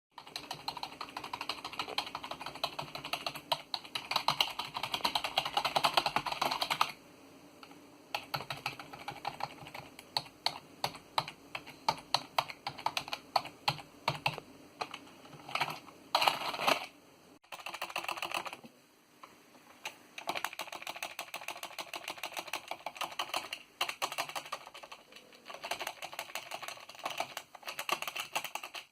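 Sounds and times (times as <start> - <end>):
keyboard typing: 0.2 - 7.0, 7.6 - 18.7, 19.8 - 28.9.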